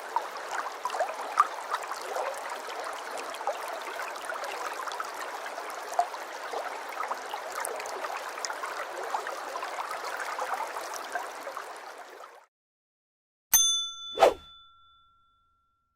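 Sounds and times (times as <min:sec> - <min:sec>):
river water flowing: 0:00.0 - 0:12.4.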